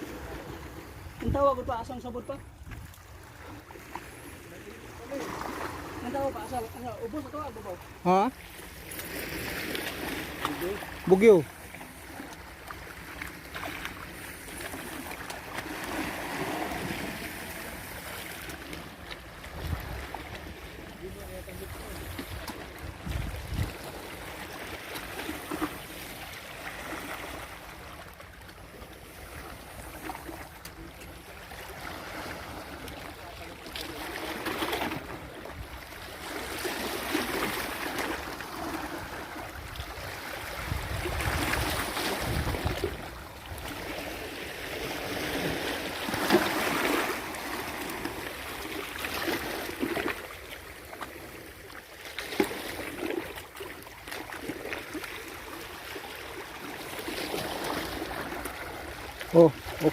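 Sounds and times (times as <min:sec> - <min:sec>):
shallow water sloshing and splashing: 0:00.0 - 0:59.9
wind rumble on microphone: 0:22.2 - 0:23.8, 0:40.5 - 0:43.2.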